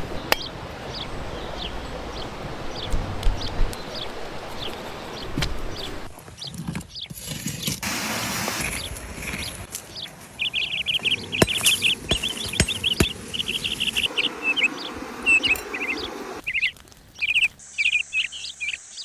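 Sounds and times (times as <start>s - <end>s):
small birds chirping: 0.0s - 7.8s, 8.6s - 19.0s.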